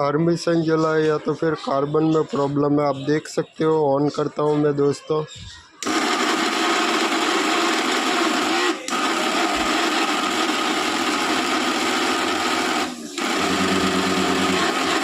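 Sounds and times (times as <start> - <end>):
mixer grinder motor running: 5.8 - 15.0.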